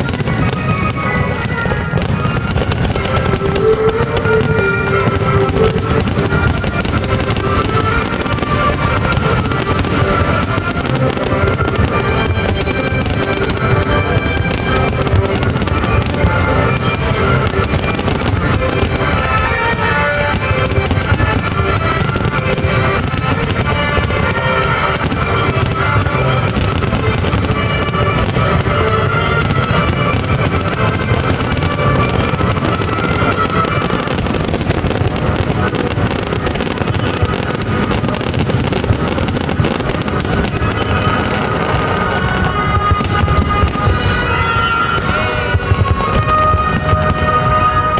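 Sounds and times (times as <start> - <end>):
fireworks bangs and crackles: 0.0 - 47.9
music playing: 0.0 - 47.9.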